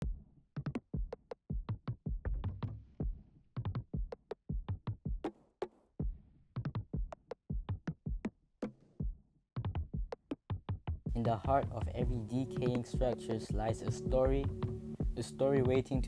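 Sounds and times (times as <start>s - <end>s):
drum machine beat: 9.0s - 16.0s
low bass thumps: 11.0s - 16.0s.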